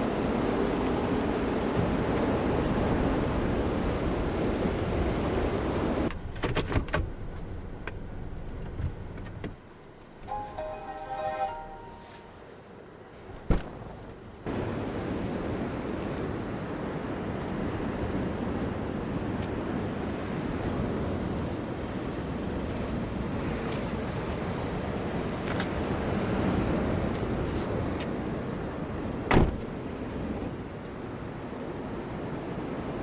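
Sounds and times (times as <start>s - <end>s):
waves breaking: 0.0s - 6.1s.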